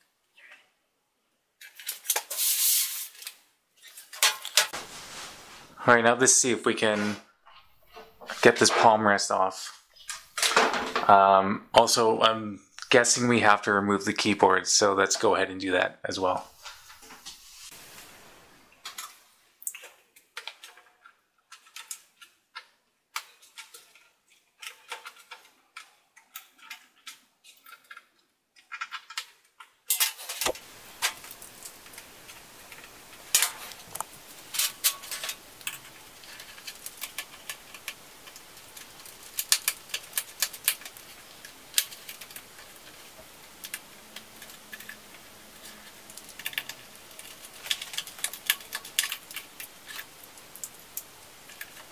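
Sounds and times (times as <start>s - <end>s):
faint steady hiss: 0.0s - 51.9s.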